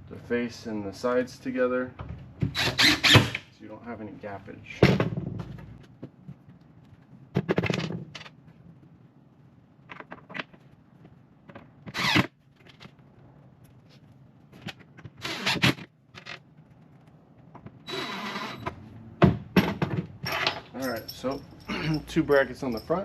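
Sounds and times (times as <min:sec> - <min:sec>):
power drill driving screws: 0:02.6 - 0:03.4, 0:11.9 - 0:12.3, 0:15.2 - 0:15.8, 0:17.9 - 0:18.7.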